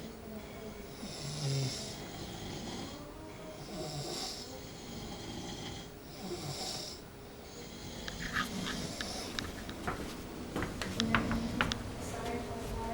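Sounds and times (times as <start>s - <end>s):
snoring with hissing rasp: 0.0s - 9.4s.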